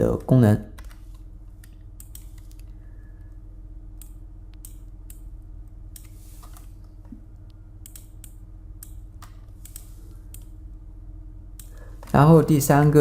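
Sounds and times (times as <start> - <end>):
low electrical hum: 0.0 - 13.0
computer mouse clicks: 0.2 - 2.8, 4.0 - 5.2, 5.9 - 7.2, 7.8 - 10.5.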